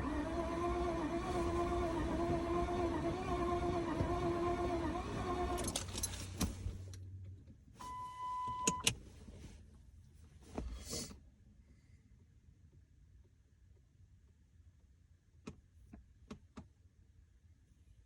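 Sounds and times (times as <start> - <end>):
engine starter cranking whine: 0.0 - 6.2.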